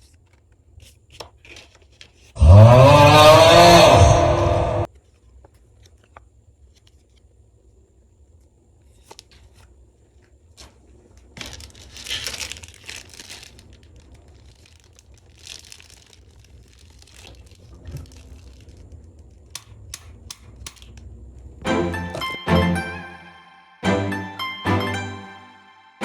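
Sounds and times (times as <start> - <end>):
packaging crinkling and tearing: 10.6 - 20.2.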